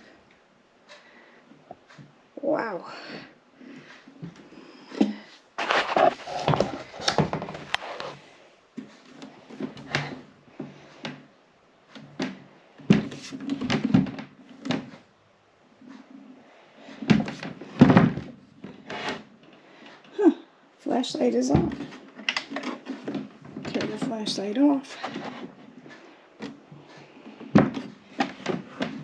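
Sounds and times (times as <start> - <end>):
cardboard and styrofoam rustling: 5.6 - 8.2
knocks and thunks: 17.0 - 18.8, 21.5 - 21.9, 27.4 - 29.0.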